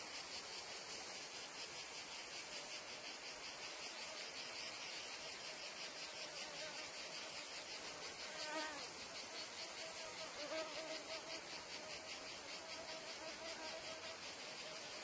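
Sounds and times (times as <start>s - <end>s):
cicadas chirring: 0.0s - 15.0s
fly buzzing close by: 8.0s - 14.9s.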